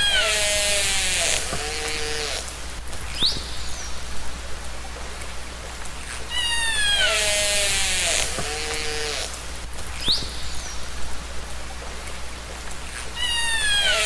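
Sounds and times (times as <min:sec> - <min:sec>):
underwater hiss: 0:00.0 - 0:03.9, 0:06.0 - 0:10.8
orca calls: 0:06.3 - 0:09.4, 0:13.2 - 0:14.0.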